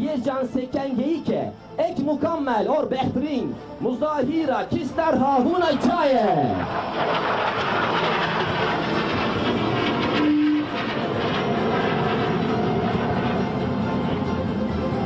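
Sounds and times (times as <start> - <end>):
jet flying overhead: 3.5 - 15.0.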